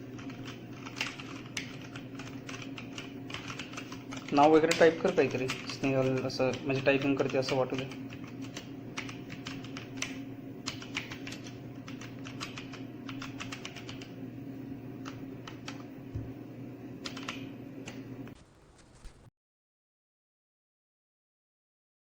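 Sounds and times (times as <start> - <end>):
steady low hum: 0.0 - 19.3.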